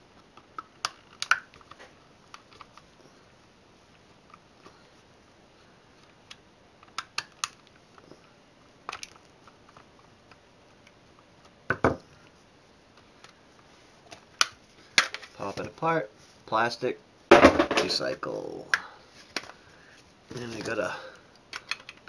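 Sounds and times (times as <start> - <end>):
plastic case and tools clicking: 21.5 - 22.0.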